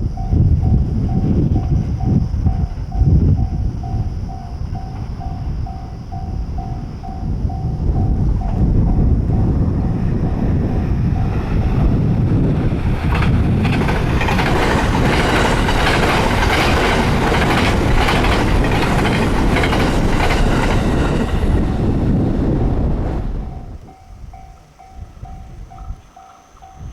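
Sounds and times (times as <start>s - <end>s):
train rumbling past: 0.0s - 26.9s
level crossing warning bell: 0.1s - 9.6s, 10.3s - 11.7s, 23.5s - 26.9s
wheels clacking over rail joints: 10.5s - 22.0s.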